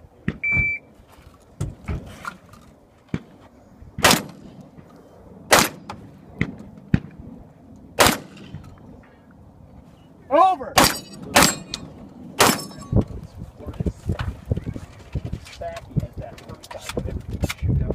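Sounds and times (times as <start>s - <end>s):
shot timer beep: 0.4s - 0.8s
gun handling clicks and knocks: 1.2s - 3.4s
shotgun shots: 4.0s - 4.6s, 5.5s - 7.2s, 8.0s - 8.7s, 10.8s - 11.8s, 12.4s - 12.8s.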